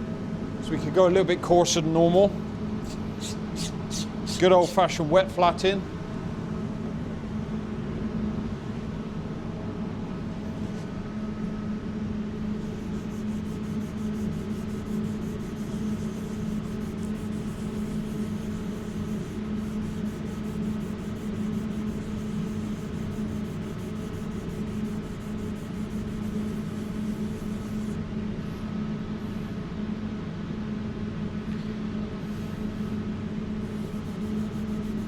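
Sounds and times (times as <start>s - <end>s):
low machine hum: 0.0s - 35.0s
sandpaper rubbing on paintwork: 2.8s - 5.0s, 12.5s - 28.0s, 33.6s - 35.0s.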